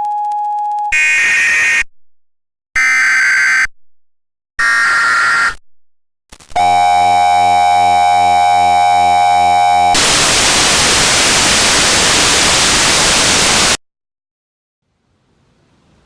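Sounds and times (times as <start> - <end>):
harsh electronic buzz tone: 4.6 - 5.6, 6.5 - 13.8
loud static hiss: 10.0 - 13.8.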